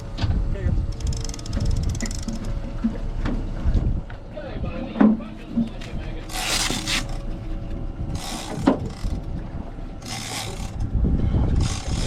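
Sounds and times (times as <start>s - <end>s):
fishing reel being cranked: 0.9s - 2.4s, 6.2s - 7.2s, 8.1s - 9.3s, 10.0s - 10.9s, 11.6s - 12.0s.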